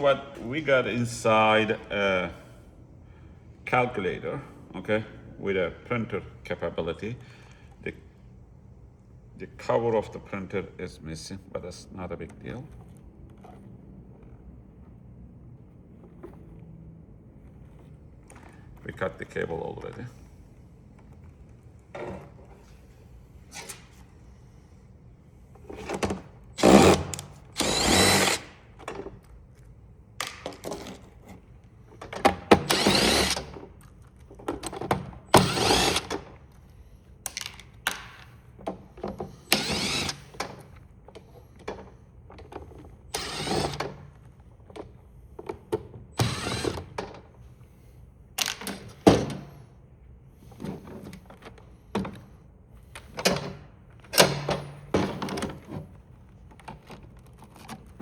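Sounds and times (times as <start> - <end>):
power screwdriver whirring: 26.6 - 28.6, 32.6 - 33.6, 35.3 - 36.2, 39.4 - 40.5, 43.1 - 44.2, 46.2 - 47.0.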